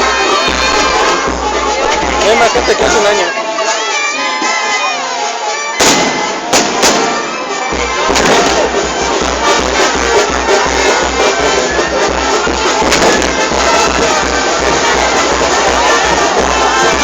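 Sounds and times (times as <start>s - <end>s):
music playing: 0.0s - 17.0s
firework bangs: 5.8s - 9.6s, 12.7s - 15.5s
heavy low beat: 5.8s - 17.0s.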